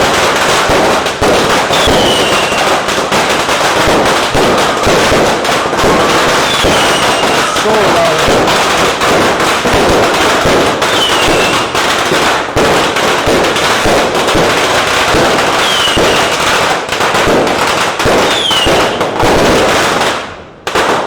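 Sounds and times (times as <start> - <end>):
fireworks bangs and crackles: 0.0 - 21.0
falling firework whistles: 0.2 - 12.3, 15.0 - 16.7, 18.2 - 19.0.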